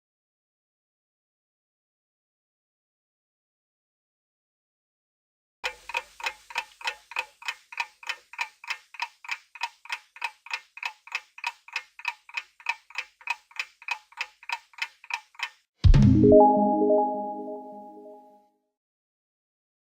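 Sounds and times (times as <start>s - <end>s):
clock ticking: 5.6s - 15.7s.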